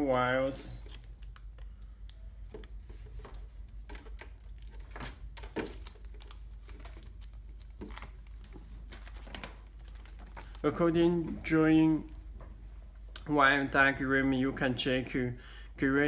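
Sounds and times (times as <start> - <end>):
wires and connectors clicking: 0.0 - 10.7.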